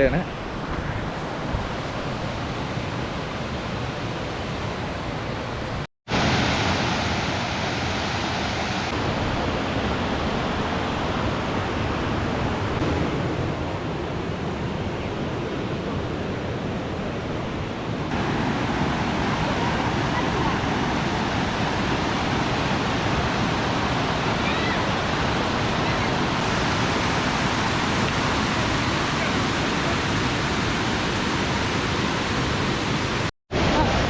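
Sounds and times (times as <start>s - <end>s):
waterfall rushing: 6.1s - 15.4s, 18.1s - 34.0s.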